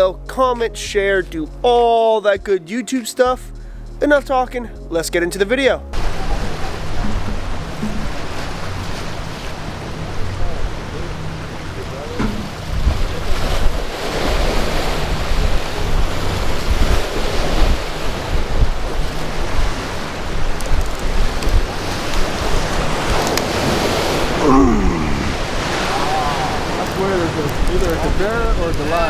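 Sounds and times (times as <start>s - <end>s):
wavering pitched sound: 0.0s - 9.4s
surf and rushing water: 5.9s - 29.0s
wind buffeting microphone: 12.3s - 29.0s.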